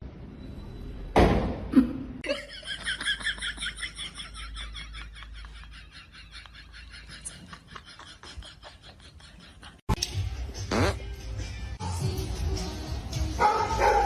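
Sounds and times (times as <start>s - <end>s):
high-pitched giggling laughter: 1.8s - 9.9s.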